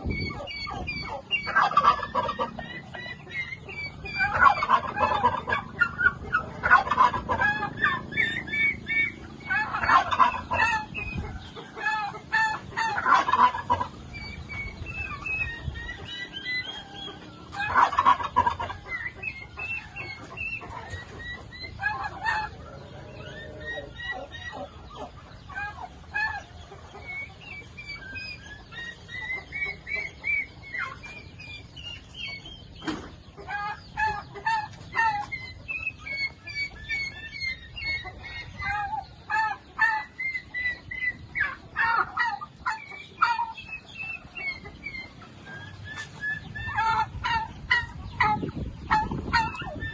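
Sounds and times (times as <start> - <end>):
loud bursts of turkey calls: 0.0 - 32.4
poultry flock calling: 0.0 - 49.9.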